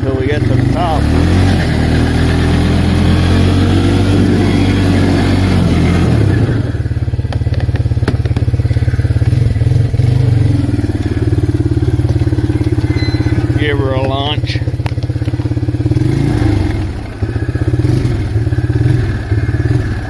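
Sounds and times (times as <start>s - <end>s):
atv engine running: 0.0s - 20.0s.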